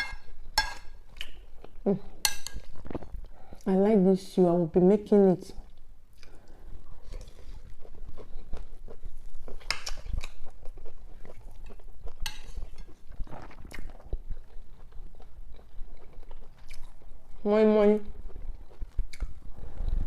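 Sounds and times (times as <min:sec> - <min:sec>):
cutlery clicking on a plate: 0:00.0 - 0:01.4, 0:12.2 - 0:12.6
chewing food: 0:05.6 - 0:20.0.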